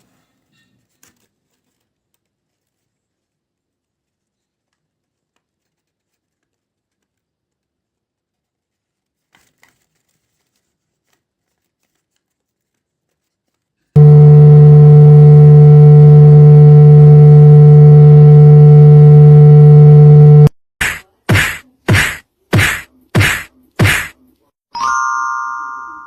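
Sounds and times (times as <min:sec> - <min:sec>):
loud steady electronic tone: 0:14.0 - 0:24.1
sharp hits: 0:14.0 - 0:24.2.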